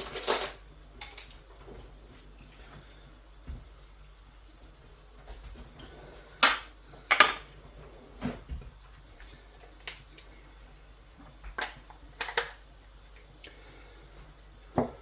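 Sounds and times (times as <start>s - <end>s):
utensils clinking against cookware: 0.0s - 1.5s.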